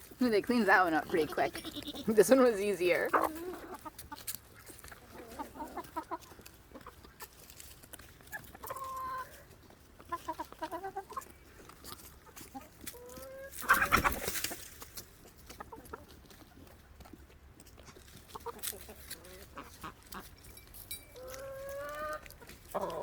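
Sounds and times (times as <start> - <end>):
chickens clucking: 0.0 - 20.5, 21.1 - 23.0
harsh chicken call: 13.0 - 14.2.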